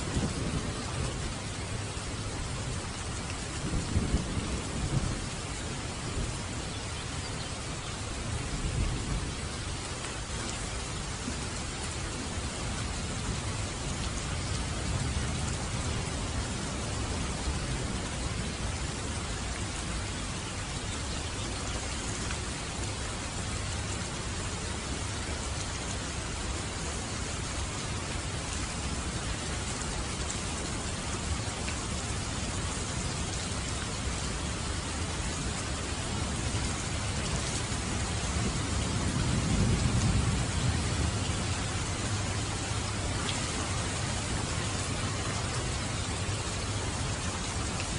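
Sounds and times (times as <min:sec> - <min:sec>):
rumble of thunder: 0:00.0 - 0:06.7, 0:08.2 - 0:09.5, 0:36.4 - 0:46.2
steady rain falling: 0:00.0 - 0:47.9.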